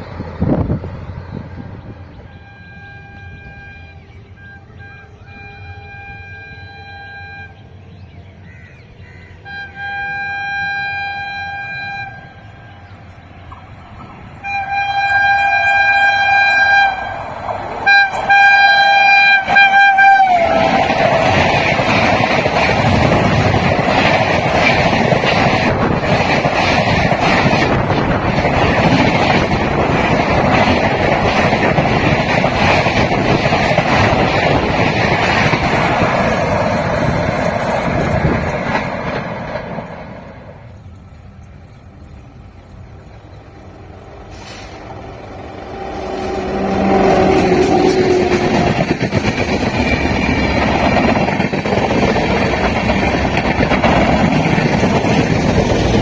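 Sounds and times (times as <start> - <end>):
train running past: 0.0 - 56.0
train horn blasts: 2.3 - 7.8, 9.4 - 13.0, 14.4 - 21.0, 45.6 - 48.8.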